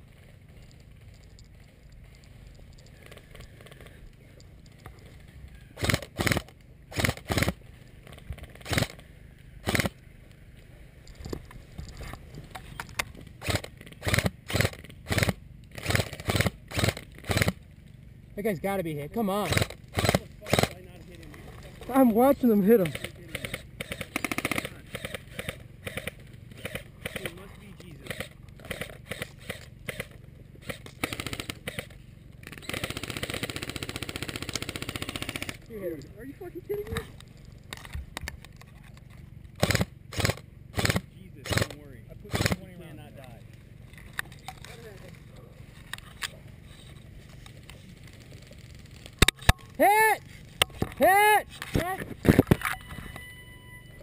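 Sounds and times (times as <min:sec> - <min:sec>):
footsteps on rough ground: 0:00.0 - 0:05.9
airsoft gun full-auto burst: 0:05.8 - 0:07.6, 0:08.4 - 0:09.0, 0:09.6 - 0:10.0, 0:13.4 - 0:17.6, 0:19.3 - 0:20.8, 0:22.8 - 0:27.4, 0:28.0 - 0:35.6, 0:39.6 - 0:42.6
airsoft gun single shots: 0:13.4 - 0:17.6, 0:39.6 - 0:42.6.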